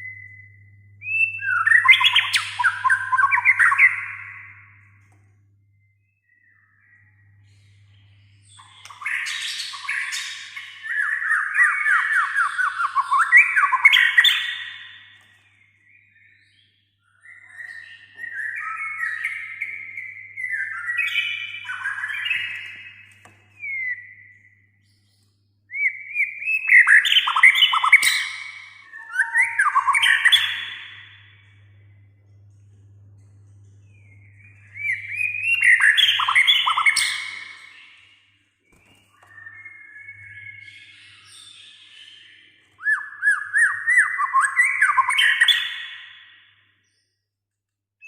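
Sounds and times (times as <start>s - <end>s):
faint low hum: 0.0s - 13.9s, 27.3s - 41.8s
bird singing: 0.0s - 47.3s.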